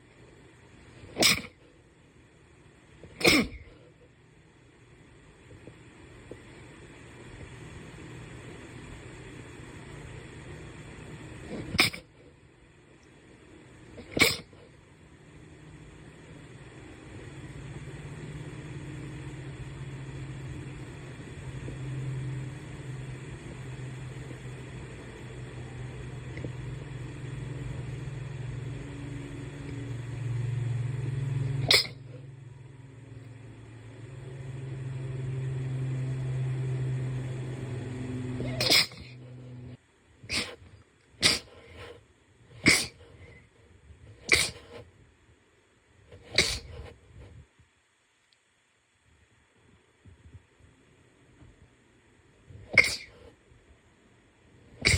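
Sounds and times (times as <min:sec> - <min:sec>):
low steady hum: 0:00.0 - 0:54.9
person sneezing: 0:01.1 - 0:01.6, 0:03.2 - 0:03.7, 0:11.5 - 0:12.1, 0:14.0 - 0:14.6, 0:31.6 - 0:32.0, 0:38.5 - 0:39.1, 0:40.3 - 0:40.6, 0:41.2 - 0:41.6, 0:42.6 - 0:43.1, 0:44.3 - 0:44.8, 0:46.3 - 0:46.9, 0:52.8 - 0:53.2.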